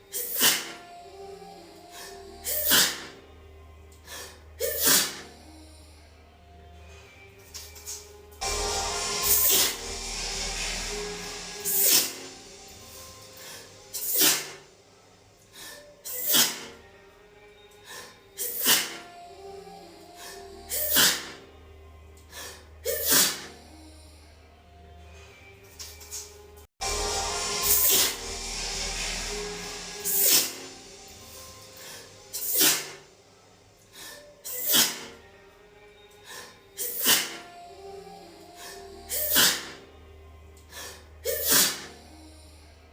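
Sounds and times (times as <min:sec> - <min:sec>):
woman sneezing: 0:00.1 - 0:00.8, 0:02.4 - 0:03.1, 0:04.6 - 0:05.3, 0:14.0 - 0:14.6, 0:16.1 - 0:16.7, 0:18.4 - 0:19.0, 0:20.7 - 0:21.4, 0:22.8 - 0:23.5, 0:34.5 - 0:35.1, 0:36.8 - 0:37.4, 0:39.1 - 0:39.8, 0:40.8 - 0:42.0
short breaths: 0:17.8 - 0:19.0.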